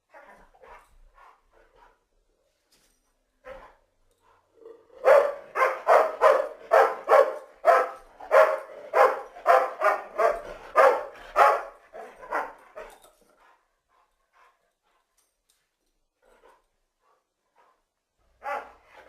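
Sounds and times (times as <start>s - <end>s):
dog barking: 5.0s - 12.6s, 18.4s - 18.7s.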